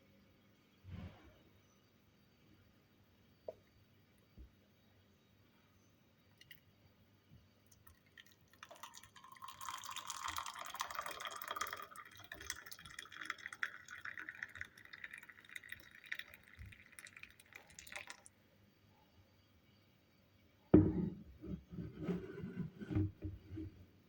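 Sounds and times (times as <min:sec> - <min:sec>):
hot water poured into a cup: 0:07.7 - 0:18.3.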